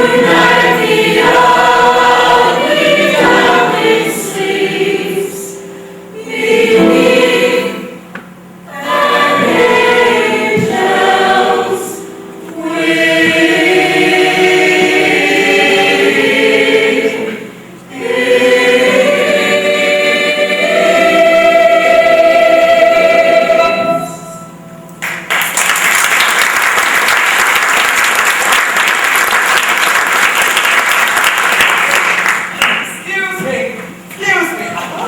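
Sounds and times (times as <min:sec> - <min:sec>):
voices singing in harmony: 0:00.0 - 0:24.6
audience applauding: 0:25.0 - 0:33.0.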